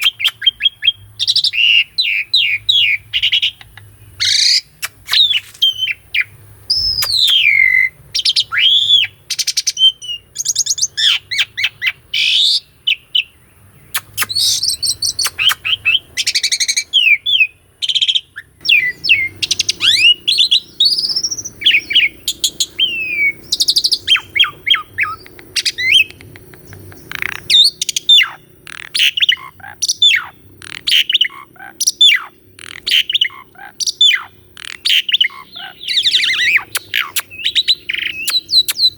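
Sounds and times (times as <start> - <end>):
starling singing: 0.0 - 38.9.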